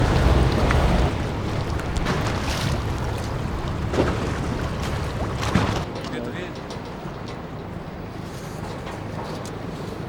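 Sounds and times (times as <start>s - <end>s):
steady low rumble: 0.0s - 5.8s
wind on microphone: 0.0s - 5.8s.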